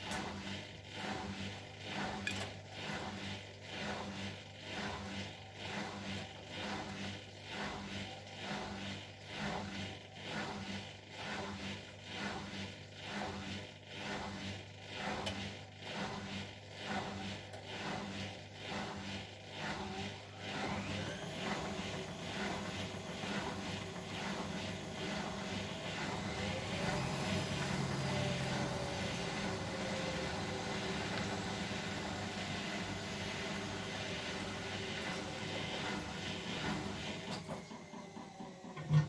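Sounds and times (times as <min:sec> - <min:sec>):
washing machine spin whine: 0:00.0 - 0:39.0
washing machine drum turning: 0:21.4 - 0:39.0.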